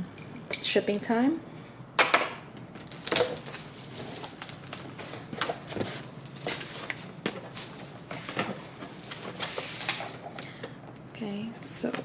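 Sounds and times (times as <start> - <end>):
cardboard box rustling: 2.9 - 9.9.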